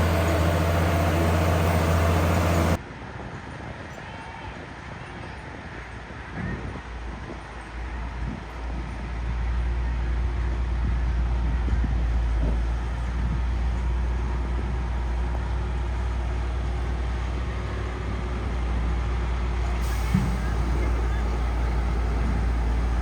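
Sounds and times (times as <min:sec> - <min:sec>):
diesel engine rumbling: 0:00.0 - 0:02.8, 0:10.2 - 0:23.0.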